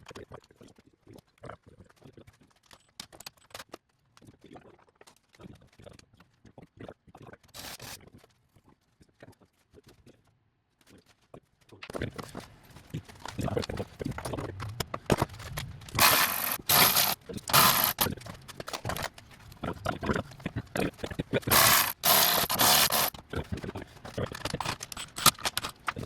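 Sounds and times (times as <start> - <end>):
tools and metal parts clattering: 12.2 - 19.6, 24.0 - 26.0.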